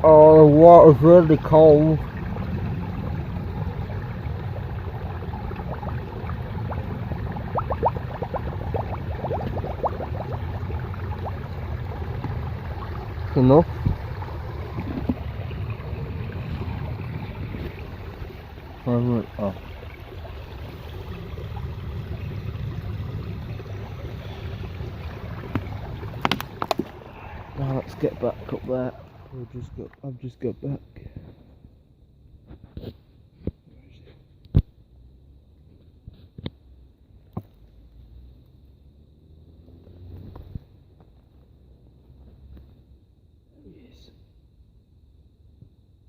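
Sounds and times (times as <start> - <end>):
stream water rushing: 0.0 - 30.0
water gurgling into container: 0.0 - 30.0
wind buffeting the microphone: 13.7 - 18.2.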